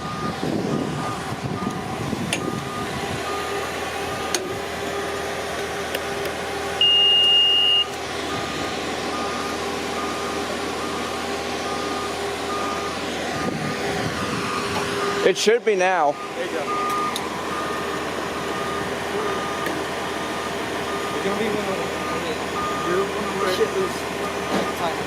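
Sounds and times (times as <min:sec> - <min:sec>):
warning alarm beeping: 0:00.0 - 0:04.4, 0:06.8 - 0:13.7, 0:15.0 - 0:19.8, 0:20.8 - 0:25.0
engine running: 0:00.0 - 0:25.0
loud high beep: 0:06.8 - 0:08.5.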